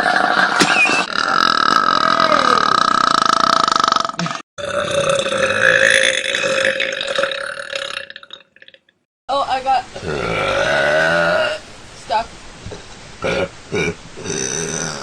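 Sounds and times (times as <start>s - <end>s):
woman belching: 1.1s - 8.4s, 10.0s - 11.6s, 13.2s - 15.0s.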